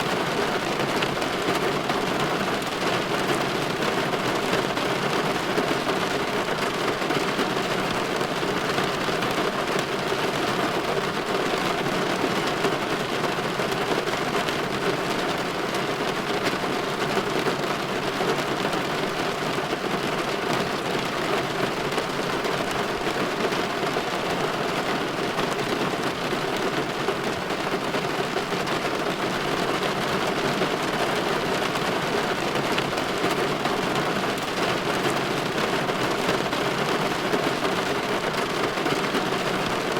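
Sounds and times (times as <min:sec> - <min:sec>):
rain on a window pane: 0:00.0 - 0:39.9.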